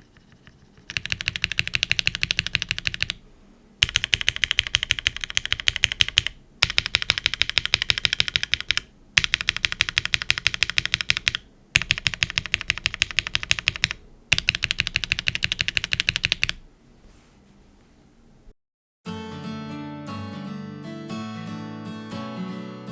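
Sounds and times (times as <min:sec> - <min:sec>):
fast typing on mechanical keyboard: 0:00.0 - 0:03.2, 0:03.8 - 0:16.6.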